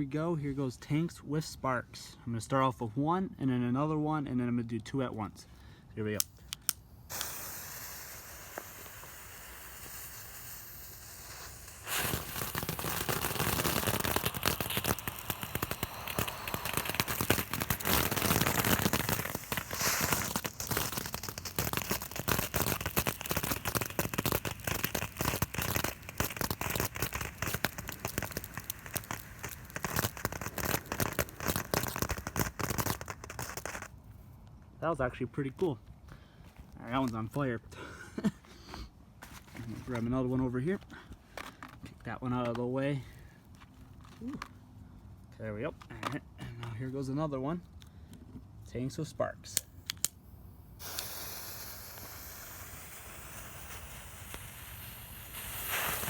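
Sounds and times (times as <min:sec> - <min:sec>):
firework fuse hissing: 0:06.3 - 0:33.9, 0:49.6 - 0:56.0
rapid crackle of sparks: 0:07.1 - 0:33.9, 0:50.8 - 0:56.0.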